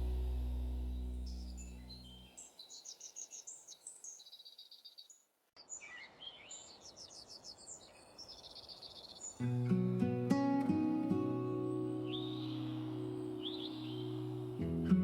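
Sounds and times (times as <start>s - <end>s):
small birds chirping: 0.0s - 15.0s
soft music: 9.4s - 15.0s.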